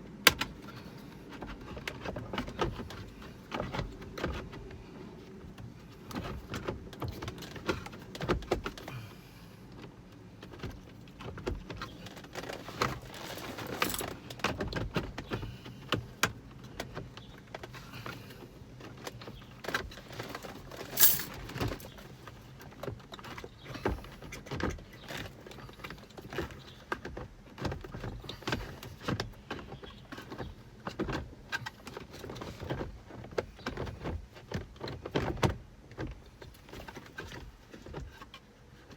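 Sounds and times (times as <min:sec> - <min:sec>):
metallic rattles of tools: 0:13.0 - 0:14.2, 0:20.4 - 0:21.9.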